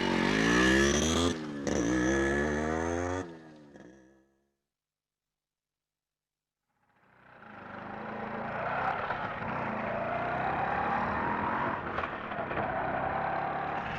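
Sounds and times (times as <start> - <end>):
autorickshaw engine running: 0.0 - 4.1, 7.0 - 13.9.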